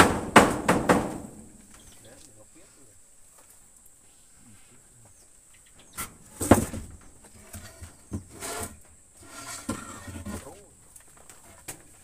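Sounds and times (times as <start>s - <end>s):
wooden knocks and thumps: 0.0s - 1.5s, 6.4s - 10.5s
scraping rustle: 5.9s - 12.0s.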